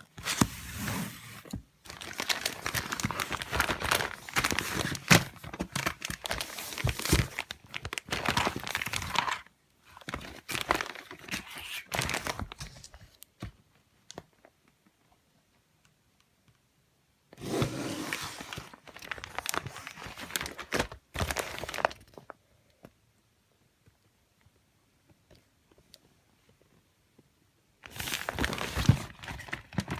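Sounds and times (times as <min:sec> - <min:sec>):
plastic packaging crinkling: 0:00.0 - 0:13.0, 0:18.0 - 0:22.3, 0:27.8 - 0:29.9.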